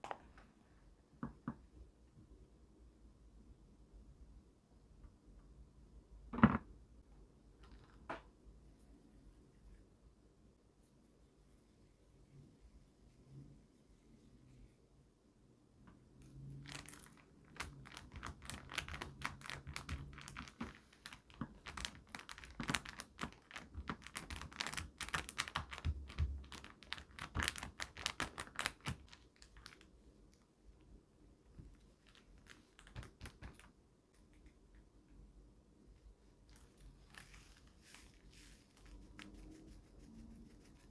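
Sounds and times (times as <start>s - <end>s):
plastic packets crinkling: 16.6s - 29.9s.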